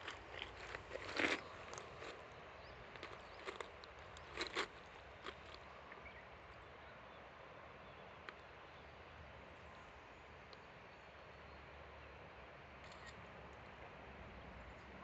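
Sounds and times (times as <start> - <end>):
river flowing: 0.0 - 15.0.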